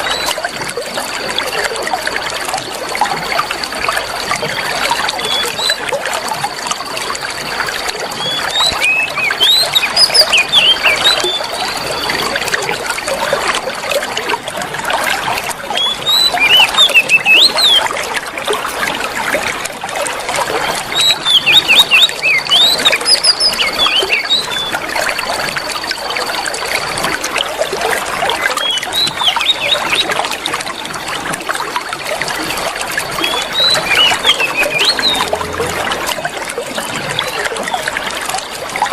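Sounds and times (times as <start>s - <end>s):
running water trickling: 0.0s - 38.9s
bird whistling song: 5.1s - 5.9s, 8.1s - 12.3s, 15.8s - 17.9s, 20.7s - 26.4s, 28.4s - 31.0s, 33.2s - 35.6s.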